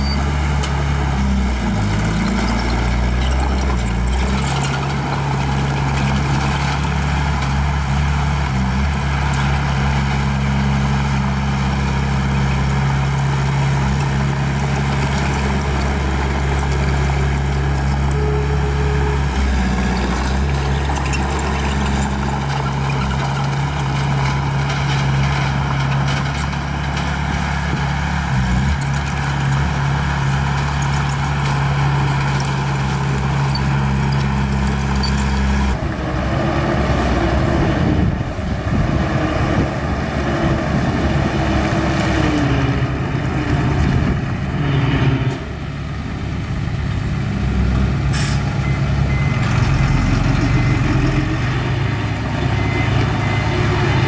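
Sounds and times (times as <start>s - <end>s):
machine squeals: 0.0s - 0.3s, 16.9s - 23.0s
bulldozer diesel engine running: 0.0s - 54.0s.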